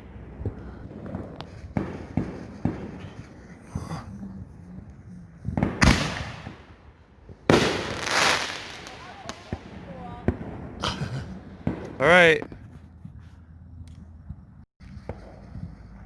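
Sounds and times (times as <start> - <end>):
fireworks popping: 0.0 - 3.8, 5.4 - 10.8.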